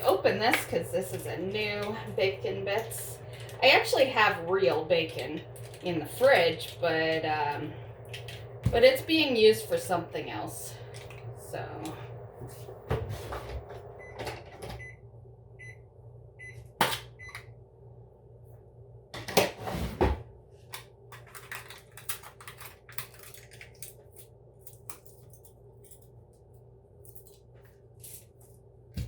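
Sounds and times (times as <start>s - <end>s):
microwave beeping: 0.0s - 17.6s
microwave low hum: 0.0s - 29.0s.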